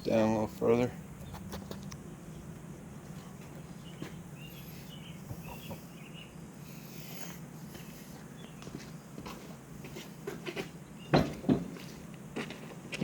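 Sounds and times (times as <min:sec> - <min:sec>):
small birds chirping: 0:00.0 - 0:09.2, 0:10.8 - 0:11.4
steady low hum: 0:00.0 - 0:13.0.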